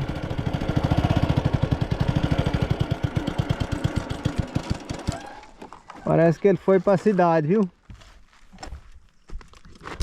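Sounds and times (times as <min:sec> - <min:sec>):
small engine idling: 0:00.0 - 0:05.7.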